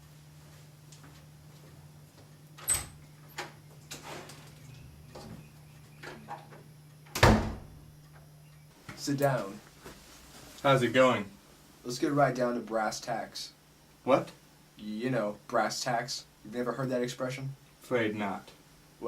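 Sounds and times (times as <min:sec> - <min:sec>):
low electrical hum: 0:00.0 - 0:19.0
light knocks and steps: 0:00.2 - 0:07.0
loud heavy door thump: 0:07.1 - 0:07.8.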